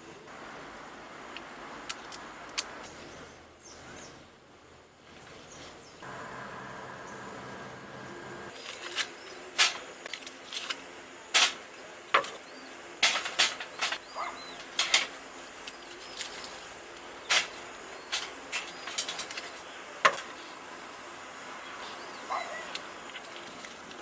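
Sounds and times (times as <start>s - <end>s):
faint high bird chirps: 13.7s - 14.8s.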